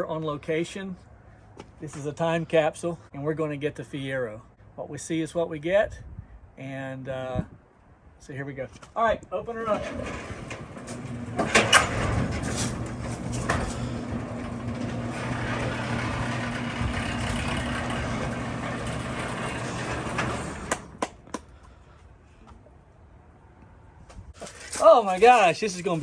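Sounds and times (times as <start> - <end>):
garage door rumbling: 9.5 - 21.2
garage door opener motor hum: 9.8 - 21.0.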